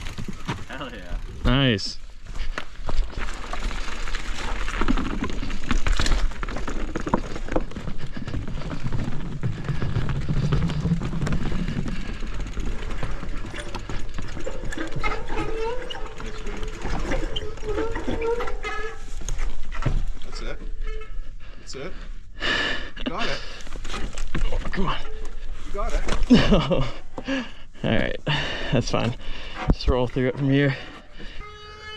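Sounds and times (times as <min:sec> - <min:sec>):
bike rattling clicks and knocks: 0:00.0 - 0:01.7, 0:02.4 - 0:20.4, 0:23.6 - 0:27.4
bike tyre and wind noise: 0:00.0 - 0:21.2
wavering squeal: 0:31.4 - 0:31.9.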